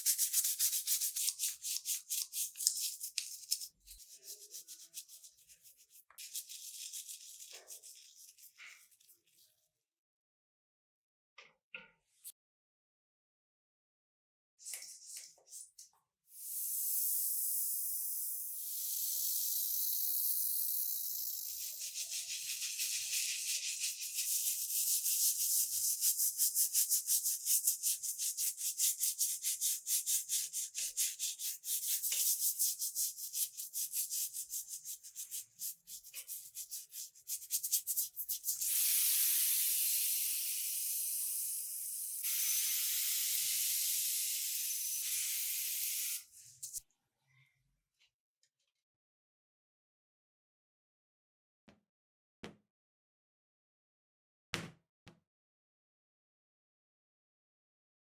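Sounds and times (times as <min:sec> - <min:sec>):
rapid sanding strokes: 0:00.0 - 0:08.6, 0:19.9 - 0:40.2
high spraying hiss: 0:42.3 - 0:46.2.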